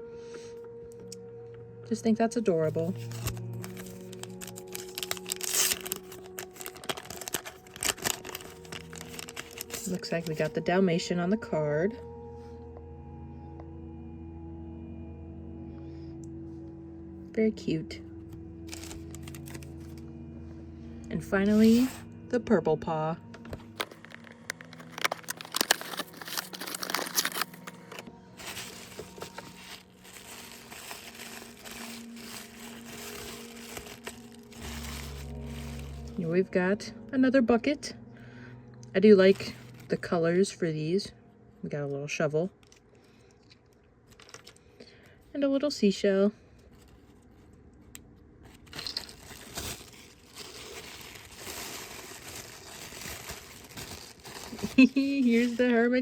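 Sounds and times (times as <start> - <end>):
packaging crinkling: 2.7 - 10.6, 18.7 - 20.0, 23.4 - 36.2, 39.3 - 40.0, 44.0 - 44.9, 48.5 - 56.0.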